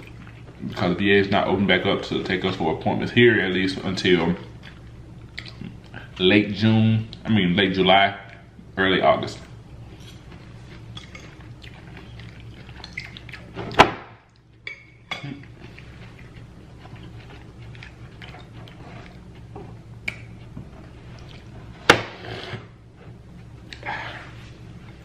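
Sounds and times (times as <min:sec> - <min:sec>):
steady low hum: 0:00.0 - 0:25.0
eating mouth noises: 0:10.6 - 0:13.6.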